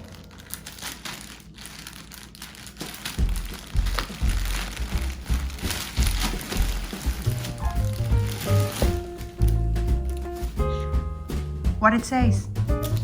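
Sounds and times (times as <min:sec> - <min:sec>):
packaging crinkling and rustling: 0:00.0 - 0:10.2
dull low handling thumps: 0:03.2 - 0:13.0.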